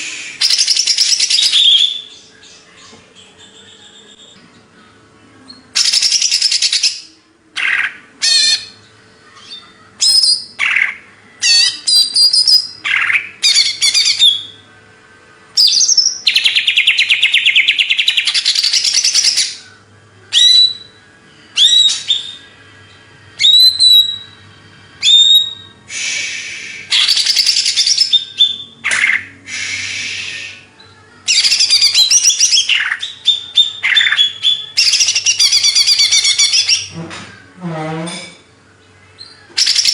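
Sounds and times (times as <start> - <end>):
bird whistled song: 0.0 - 2.5, 5.5 - 8.8, 9.4 - 14.6, 15.6 - 21.0, 21.6 - 22.5, 23.4 - 24.4, 25.0 - 37.0, 39.2 - 39.9.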